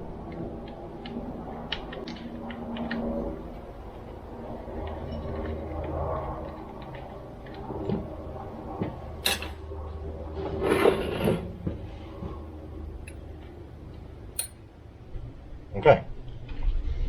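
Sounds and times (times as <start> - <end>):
low steady hum: 11.2 - 17.0
tool and part clicks and knocks: 14.4 - 14.6.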